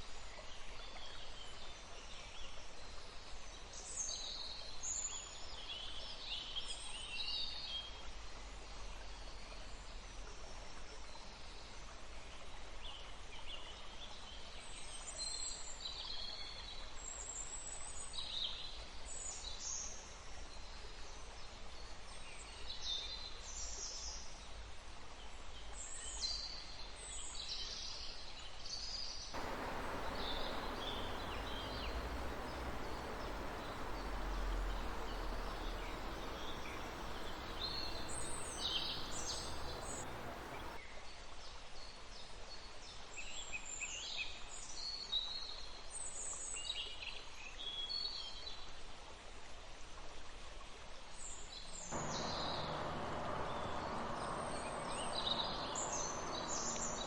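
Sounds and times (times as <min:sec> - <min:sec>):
background hiss: 0:29.4 - 0:40.8, 0:52.0 - 0:57.0
birds chirping: 0:29.4 - 0:40.8, 0:52.0 - 0:57.0
running water rushing: 0:29.4 - 0:40.8, 0:52.0 - 0:57.0.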